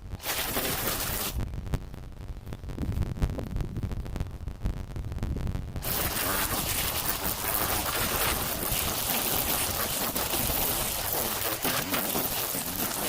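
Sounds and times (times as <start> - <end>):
string trimmer cutting grass: 5.8 - 13.0.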